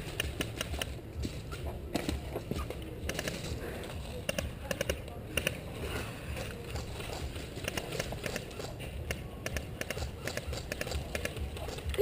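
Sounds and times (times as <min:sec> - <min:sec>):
running footsteps: 0:00.0 - 0:05.6
sharp clicks: 0:06.4 - 0:12.0.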